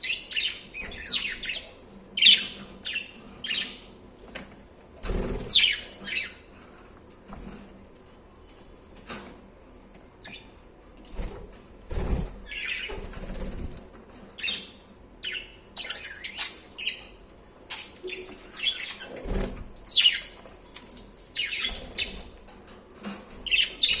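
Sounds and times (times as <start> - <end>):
budgerigars chirping: 0.0 - 3.9, 5.5 - 6.4, 14.4 - 19.2, 19.9 - 20.4, 23.5 - 24.0.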